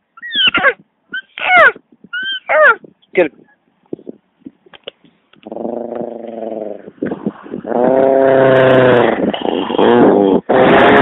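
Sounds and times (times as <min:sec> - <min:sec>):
man imitating dog growl: 0:05.4 - 0:06.8, 0:07.6 - 0:11.0.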